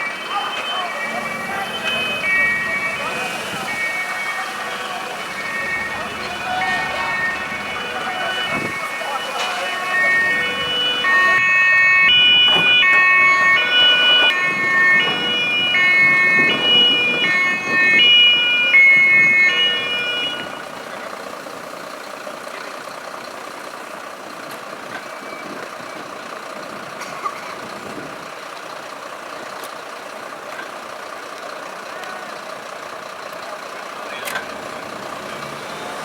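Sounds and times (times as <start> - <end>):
vehicle engine running: 0.0 - 12.9, 25.8 - 36.0
two-tone siren: 0.0 - 21.1, 34.3 - 36.0.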